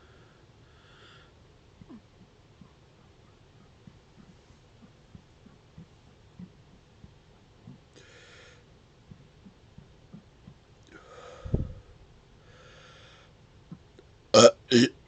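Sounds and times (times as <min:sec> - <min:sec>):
man breathing: 0:00.0 - 0:01.4, 0:07.9 - 0:08.7, 0:10.9 - 0:13.4.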